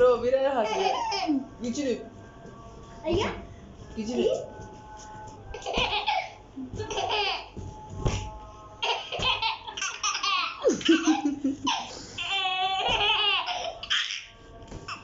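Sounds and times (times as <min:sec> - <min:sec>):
young child laughing: 0:09.2 - 0:11.9.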